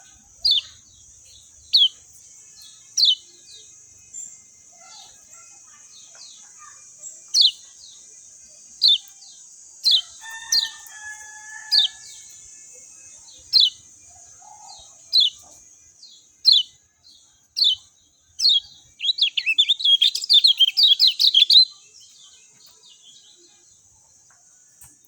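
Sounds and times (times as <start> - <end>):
bird chirping: 0.0 - 25.0.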